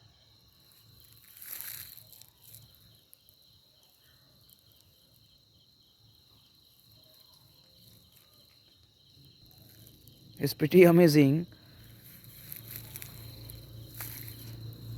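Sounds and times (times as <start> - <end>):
night insects chirring: 0.0 - 14.9
rustling scuff: 12.1 - 14.9.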